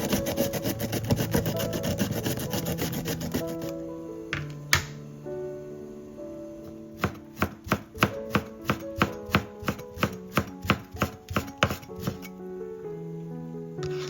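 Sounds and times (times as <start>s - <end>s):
knife chopping on cutting board: 0.0s - 3.7s, 7.0s - 12.3s
soft background music: 0.0s - 14.0s.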